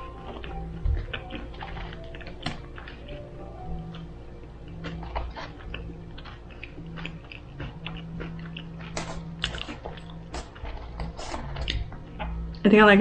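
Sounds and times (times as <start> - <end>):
low steady hum: 0.0 - 13.0
chewing and wet mouth clicks: 3.9 - 12.6.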